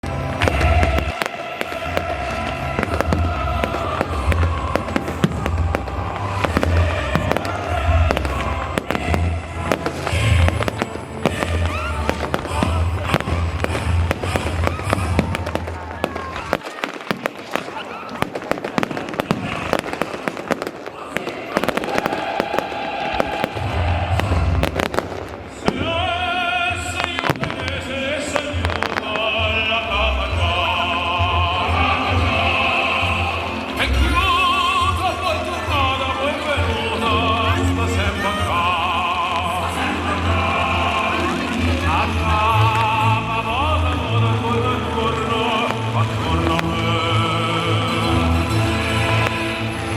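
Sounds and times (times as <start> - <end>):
fireworks bangs and crackles: 0.0 - 49.9
operatic singing: 0.0 - 49.9.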